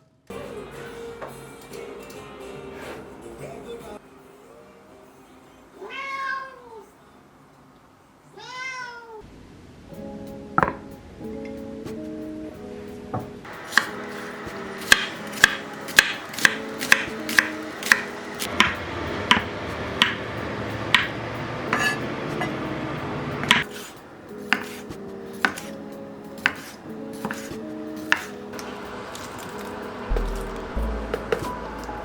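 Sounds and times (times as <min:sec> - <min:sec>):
soft background music: 0:00.3 - 0:07.6, 0:09.9 - 0:32.0
knife chopping on cutting board: 0:13.6 - 0:20.2, 0:23.4 - 0:25.8, 0:26.4 - 0:28.4.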